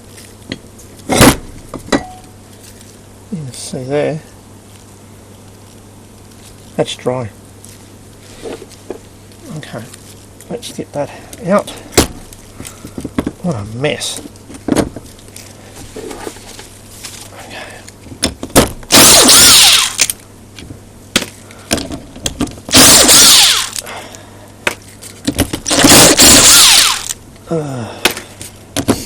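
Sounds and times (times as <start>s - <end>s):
battery drill motor whine: 18.9s - 20.2s, 22.7s - 23.8s, 25.7s - 27.2s.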